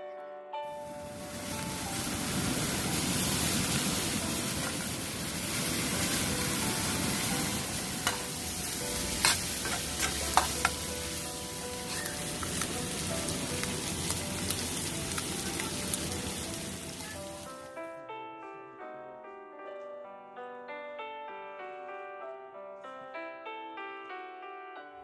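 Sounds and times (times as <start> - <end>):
food sizzling in a pan: 0.8 - 17.7.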